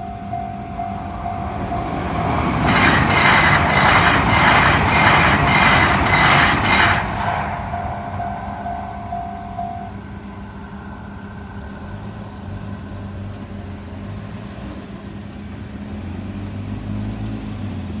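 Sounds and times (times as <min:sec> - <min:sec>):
level crossing warning tone: 0:00.0 - 0:12.7.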